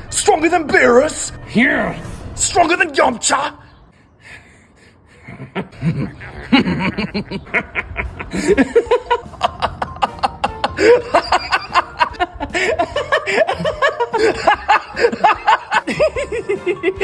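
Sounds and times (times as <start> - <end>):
person laughing: 4.4 - 17.0.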